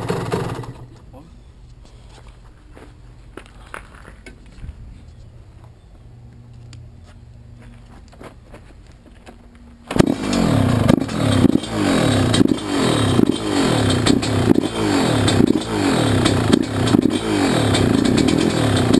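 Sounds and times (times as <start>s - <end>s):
two-stroke engine revving: 0.0s - 1.0s, 9.9s - 18.9s.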